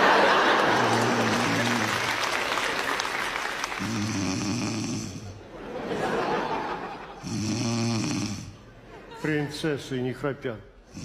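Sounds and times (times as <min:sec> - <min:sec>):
person snoring: 0:00.7 - 0:02.2, 0:03.8 - 0:05.4, 0:07.2 - 0:08.6.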